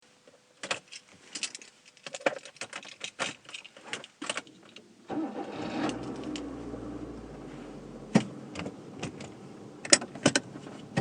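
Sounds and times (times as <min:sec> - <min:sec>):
metallic clicks and clinks: 0:00.6 - 0:04.8
car keys jangling: 0:00.7 - 0:11.0
car engine cranking and starting: 0:04.2 - 0:11.0.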